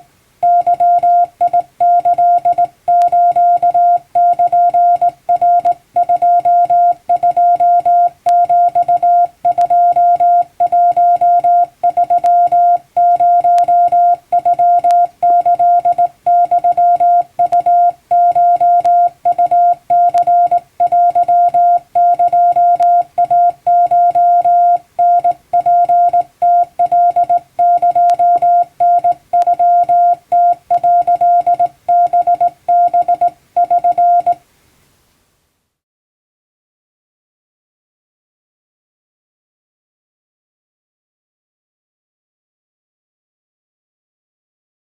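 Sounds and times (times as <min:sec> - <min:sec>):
morse code tone: 0:00.4 - 0:34.4.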